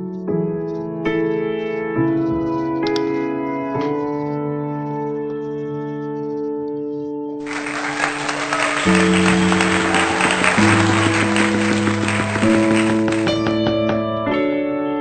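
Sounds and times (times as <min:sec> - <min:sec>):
background music of sustained chords: 0:07.5 - 0:13.7.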